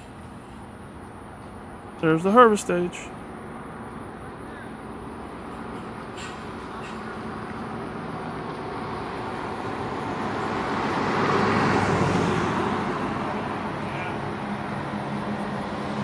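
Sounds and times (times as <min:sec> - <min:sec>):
vehicle passing by: 0:07.7 - 0:16.0.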